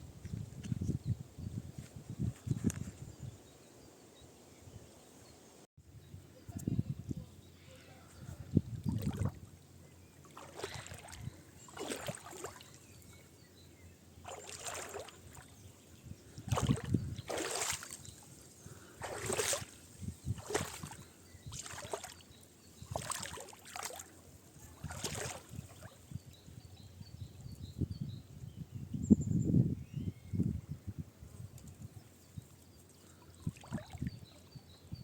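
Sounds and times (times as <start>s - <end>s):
water splashing swishes: 8.8s - 9.5s, 10.2s - 13.0s, 14.2s - 15.5s, 16.4s - 18.4s, 19.0s - 19.8s, 20.4s - 22.2s, 22.9s - 24.2s, 24.8s - 26.0s.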